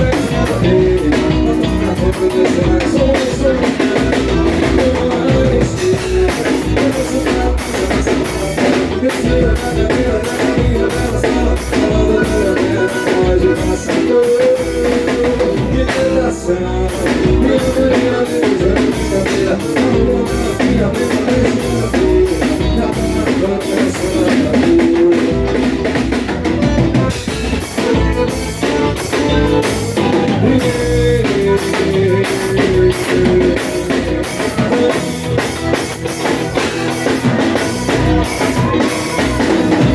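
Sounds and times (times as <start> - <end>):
drum kit beat: 0.0 - 39.9
loud band music: 0.0 - 39.9.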